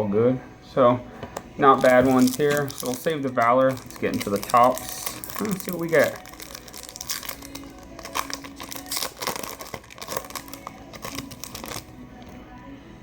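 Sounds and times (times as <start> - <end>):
plastic wrappers crinkling: 1.6 - 12.0
wrapper being torn open: 1.8 - 11.9.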